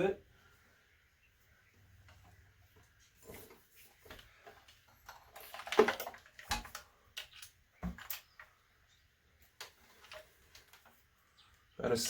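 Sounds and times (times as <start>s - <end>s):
clicks and rustling: 2.0s - 8.6s, 9.4s - 11.1s.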